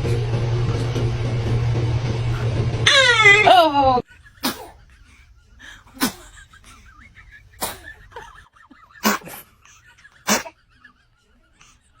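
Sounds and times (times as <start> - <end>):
baby sneezing: 4.4 - 4.8, 6.0 - 6.4, 7.6 - 8.0, 8.9 - 9.5, 10.2 - 10.6.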